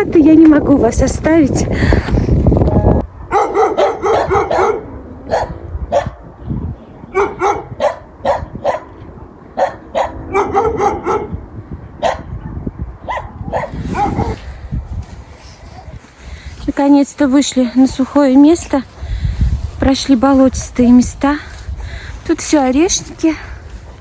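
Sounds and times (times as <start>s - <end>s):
dog barking: 3.2s - 6.2s, 7.1s - 8.9s, 9.6s - 11.4s, 12.0s - 14.4s.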